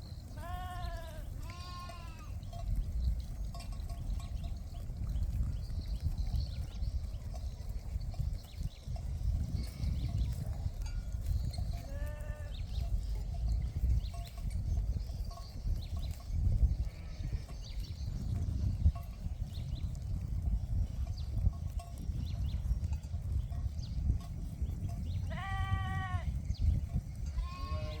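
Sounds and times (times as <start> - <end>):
sheep bleating: 0.4 - 2.4, 11.8 - 12.6, 25.3 - 26.3, 27.3 - 28.0.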